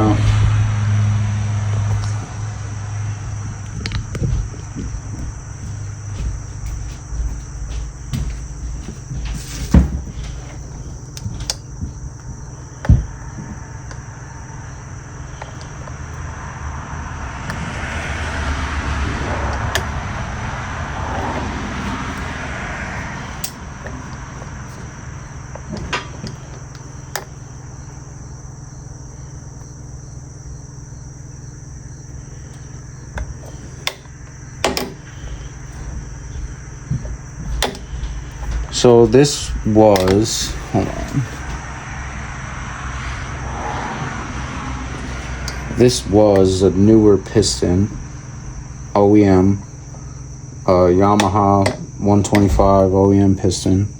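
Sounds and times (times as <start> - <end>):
constant high whine: 0.0 - 53.9
steady hum: 0.0 - 53.9
scraping and rustling: 1.5 - 46.8
metallic knocks and clinks: 32.5 - 41.7.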